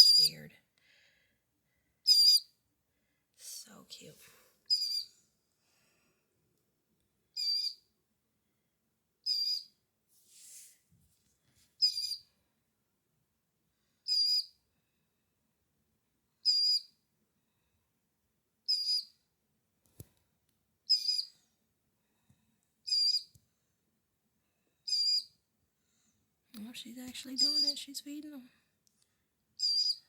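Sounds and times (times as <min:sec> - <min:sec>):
bird chick peeping: 0:02.1 - 0:02.5, 0:04.7 - 0:05.1, 0:07.3 - 0:07.9, 0:09.2 - 0:09.8, 0:11.8 - 0:12.3, 0:14.1 - 0:14.6, 0:16.4 - 0:17.0, 0:18.7 - 0:19.2, 0:20.9 - 0:21.4, 0:22.8 - 0:23.3, 0:24.8 - 0:25.4, 0:26.8 - 0:28.4, 0:29.6 - 0:30.0.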